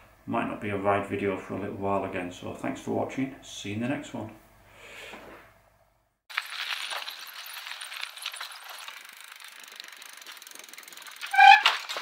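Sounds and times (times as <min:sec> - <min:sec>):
bicycle freewheel ratchet clicking: 0:06.3 - 0:12.0.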